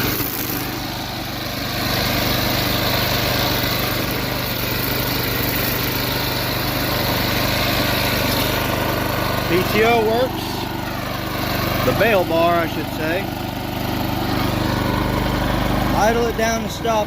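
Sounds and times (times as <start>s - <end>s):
string trimmer engine running: 0.0s - 17.0s.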